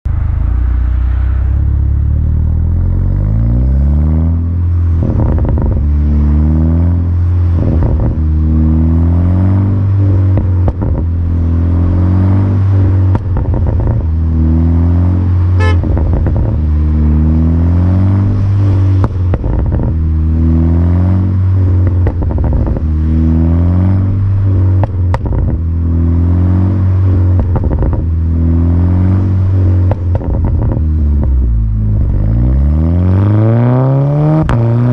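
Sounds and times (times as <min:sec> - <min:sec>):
car engine revving: 0:00.1 - 0:34.9
exhaust pops and crackles: 0:04.7 - 0:06.0, 0:07.1 - 0:08.3, 0:09.8 - 0:12.0, 0:12.6 - 0:14.4, 0:15.6 - 0:16.9, 0:18.3 - 0:20.4, 0:21.6 - 0:23.2, 0:24.0 - 0:25.9, 0:27.0 - 0:28.6, 0:29.2 - 0:32.2, 0:34.4 - 0:34.9.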